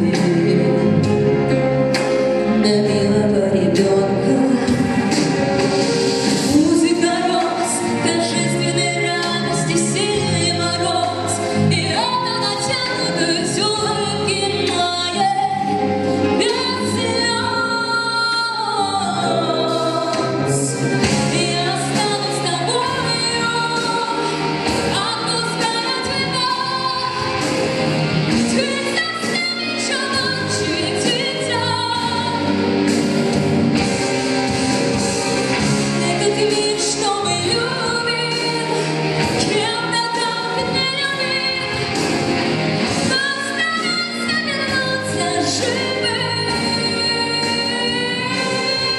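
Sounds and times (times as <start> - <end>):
woman singing: 0.0 - 1.6, 2.5 - 33.1, 35.9 - 48.9
instrumental backing music: 0.0 - 48.9.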